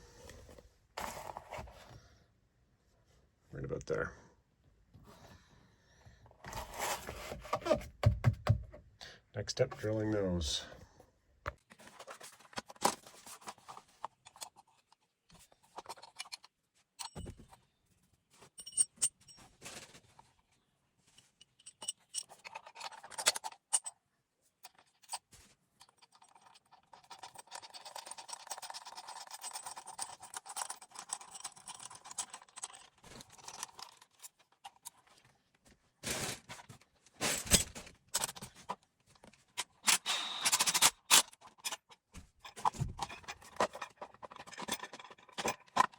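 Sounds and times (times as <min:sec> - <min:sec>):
metal tools clattering: 0:39.6 - 0:45.9
cordless drill running: 0:40.0 - 0:40.5.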